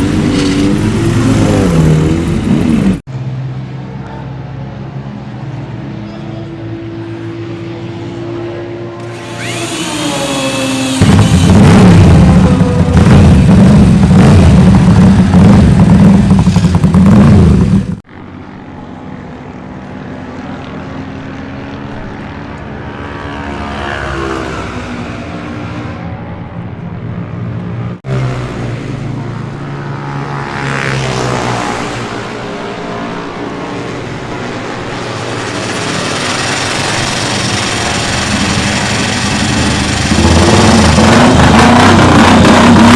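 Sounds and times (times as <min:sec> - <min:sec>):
loud close motorcycle engine: 0:00.0 - 0:03.0, 0:06.6 - 0:25.7, 0:28.0 - 0:42.9
motorcycle engines revving: 0:00.0 - 0:03.6, 0:05.2 - 0:42.9.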